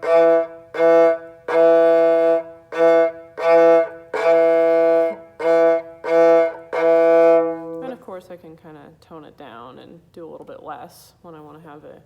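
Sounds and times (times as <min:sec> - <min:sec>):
bowed fiddle string: 0:00.0 - 0:08.2.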